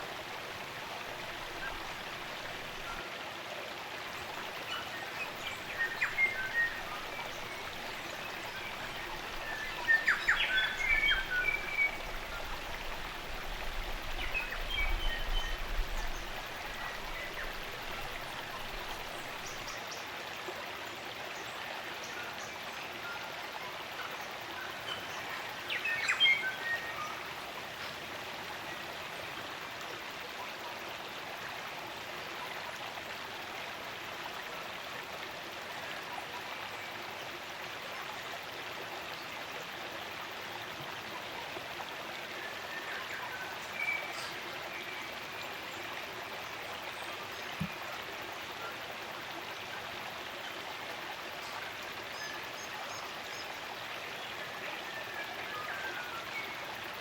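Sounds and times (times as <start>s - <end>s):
stream rushing: 0.0s - 22.0s.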